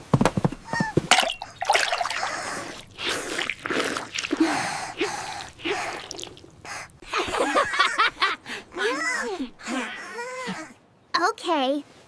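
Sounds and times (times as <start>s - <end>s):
gasping breaths: 2.0s - 7.4s, 8.4s - 10.8s.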